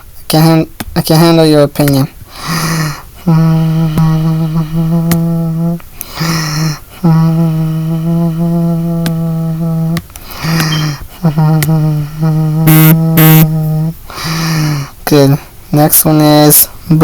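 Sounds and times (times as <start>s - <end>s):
person humming low note: 3.3s - 14.0s
sharp clicks: 10.0s - 11.0s.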